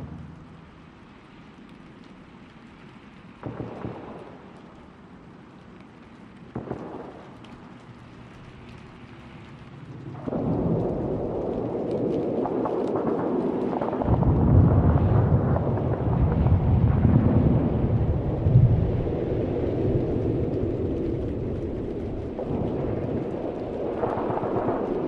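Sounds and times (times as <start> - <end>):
low rumbling background: 0.0 - 1.2
loud crackling rumble: 0.0 - 25.0.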